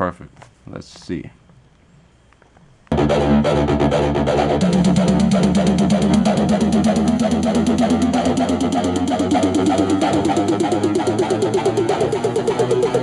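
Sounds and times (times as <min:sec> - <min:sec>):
song through portable speaker: 0:02.9 - 0:13.0.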